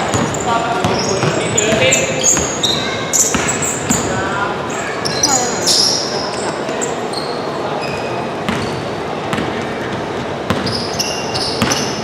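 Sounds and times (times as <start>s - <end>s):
basketball bouncing on court: 0.0s - 4.2s, 8.4s - 12.0s
sneaker squeaks: 0.0s - 12.0s.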